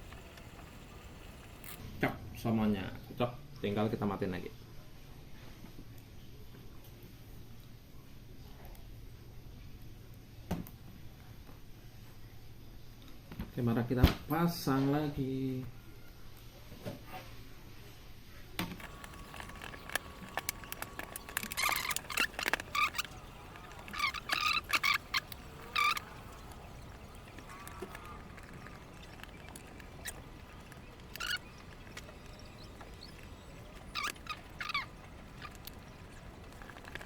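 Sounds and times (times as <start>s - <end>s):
short loud bird-like calls: 18.8s - 37.0s.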